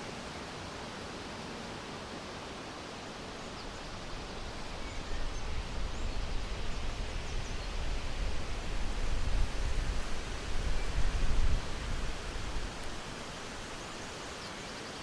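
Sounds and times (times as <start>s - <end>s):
steady rushing hiss: 0.0s - 15.0s
wind buffeting the microphone: 5.1s - 13.7s.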